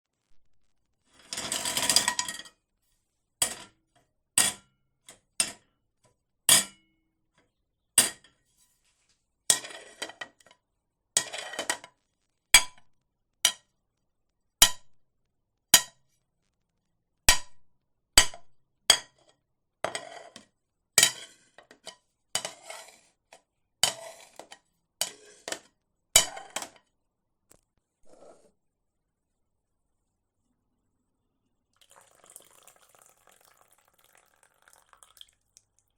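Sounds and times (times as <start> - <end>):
plate clinking and knocking: 23.8 - 26.8.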